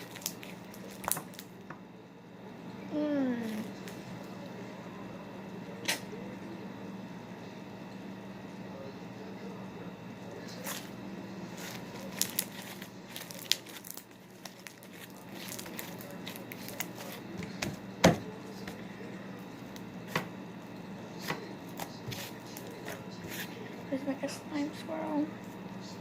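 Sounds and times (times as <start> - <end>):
slime squished by hand: 11.6 - 17.7.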